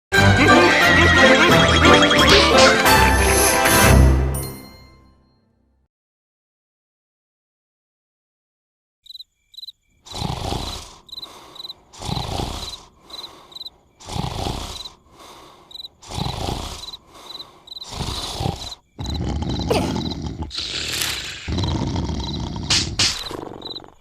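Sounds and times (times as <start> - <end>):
soft breath: 10.1 - 21.5
loud rasping snore: 10.1 - 24.0.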